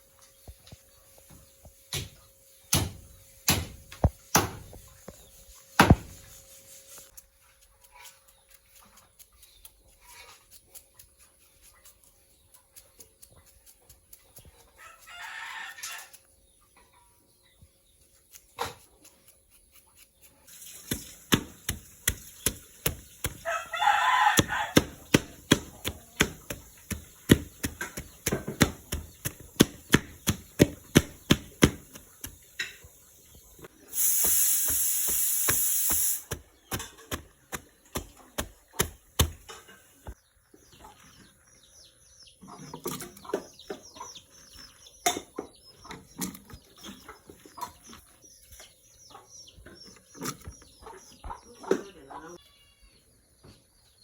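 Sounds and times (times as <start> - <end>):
rooster crowing: 14.8 - 16.2, 23.4 - 24.9
loud even hiss: 33.8 - 36.3.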